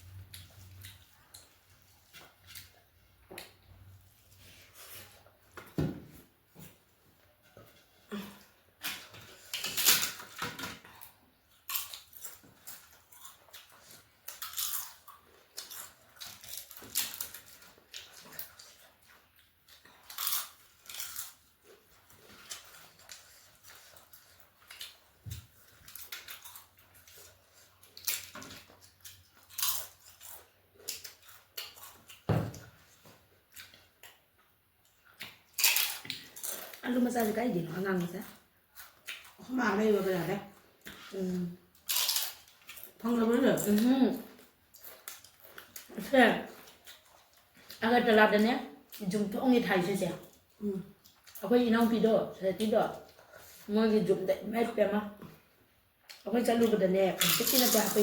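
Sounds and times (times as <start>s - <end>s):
person chewing crisp food: 0.1s - 5.5s, 6.8s - 36.8s, 38.4s - 39.6s, 40.4s - 43.1s, 43.8s - 47.8s.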